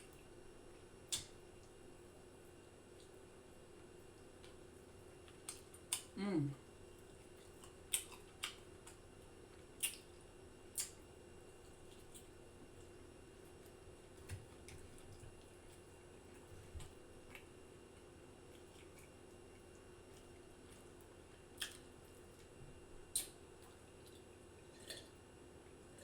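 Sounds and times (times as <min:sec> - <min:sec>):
faint room hum: 0:00.0 - 0:26.0
mouth clicks of chewing: 0:10.7 - 0:11.0.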